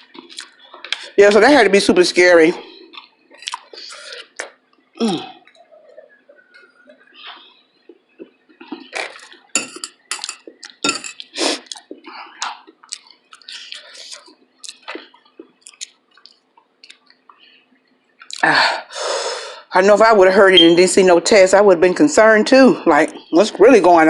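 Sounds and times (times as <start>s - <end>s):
person chewing food: 0.0s - 1.1s, 2.6s - 18.4s.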